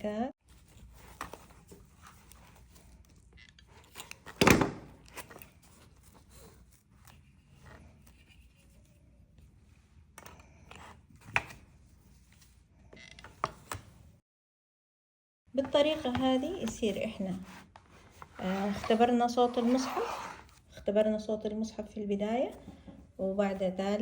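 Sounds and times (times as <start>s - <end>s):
small clicks and rubs: 5.0s - 9.6s.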